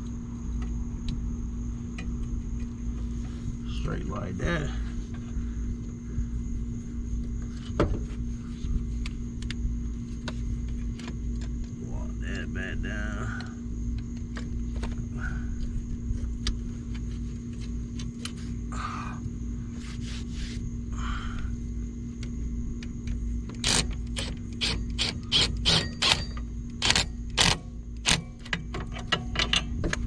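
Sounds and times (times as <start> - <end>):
low hum: 0.0 - 30.0
socket ratchet clicking: 23.6 - 28.4.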